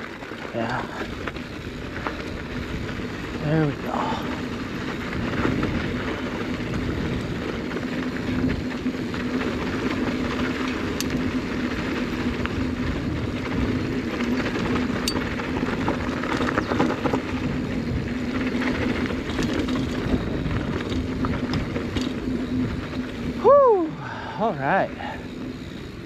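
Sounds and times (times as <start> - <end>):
bike tyres rolling over dirt: 0.0 - 26.0
wind rushing over microphone: 0.0 - 26.0.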